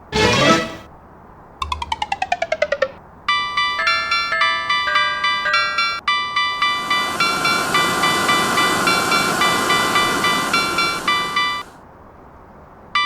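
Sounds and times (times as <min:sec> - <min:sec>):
passing train rushing: 0:00.0 - 0:00.9, 0:03.7 - 0:11.8
railroad crossing bells dinging: 0:01.6 - 0:11.7
faint hiss: 0:06.6 - 0:11.8.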